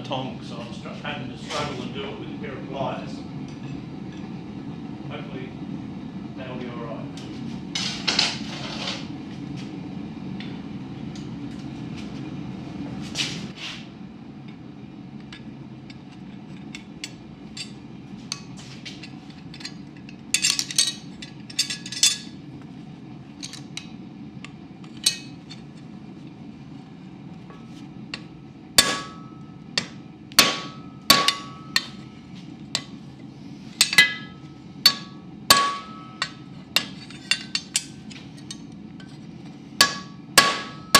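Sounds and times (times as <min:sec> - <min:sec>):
low hum: 0:00.0 - 0:40.9
hammer striking metal on anvil: 0:28.1 - 0:32.1, 0:33.8 - 0:38.7, 0:39.8 - 0:40.9.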